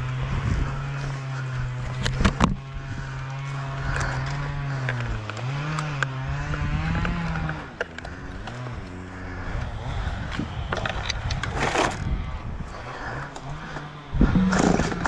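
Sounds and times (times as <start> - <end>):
small two-stroke engine running: 11.4 - 12.1.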